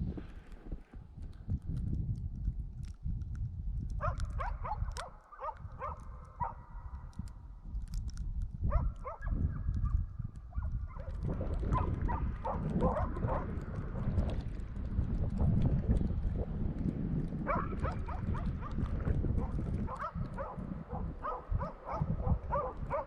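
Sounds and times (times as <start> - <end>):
wind rumble on microphone: 0.0 - 23.0
dogs barking: 4.0 - 6.9, 8.7 - 13.8, 17.4 - 23.0.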